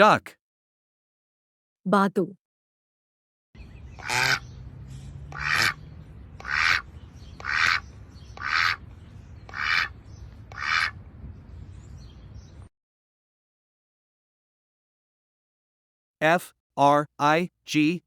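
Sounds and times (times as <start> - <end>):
duck quacking: 4.0 - 4.5, 5.3 - 5.8, 6.4 - 7.8, 8.4 - 8.8, 9.5 - 9.9, 10.5 - 11.0.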